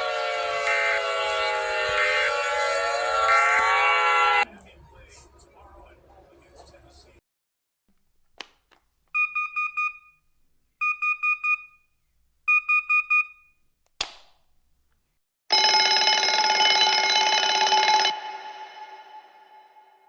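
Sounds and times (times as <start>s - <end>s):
harsh steady attention tone: 15.5s - 20.0s.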